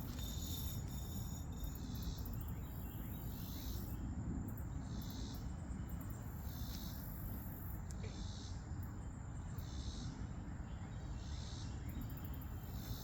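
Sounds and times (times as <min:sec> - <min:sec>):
insects calling in high-pitched pulses: 0:00.0 - 0:04.0.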